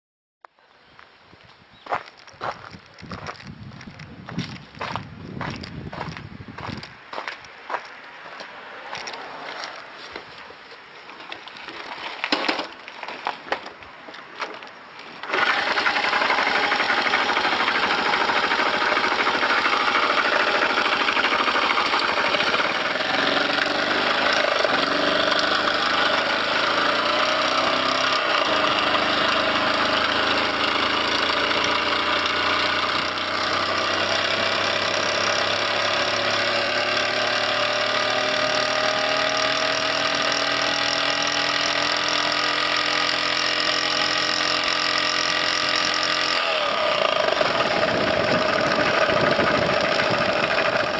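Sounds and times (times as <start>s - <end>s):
small engine clattering: 15.2s - 50.9s.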